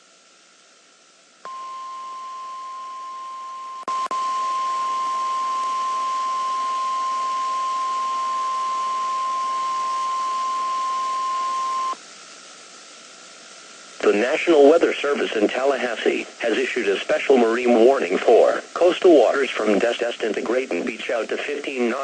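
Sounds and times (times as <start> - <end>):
long steady alarm beep: 1.5 - 12.0
radio static: 14.0 - 22.0.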